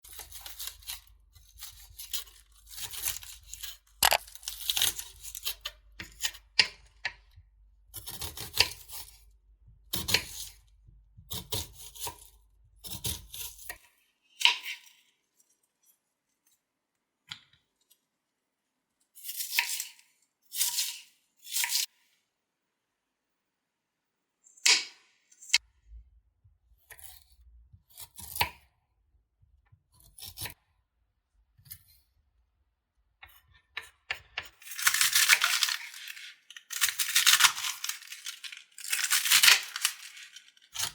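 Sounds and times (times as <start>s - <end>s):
tearing and rustling: 34.6s - 40.9s.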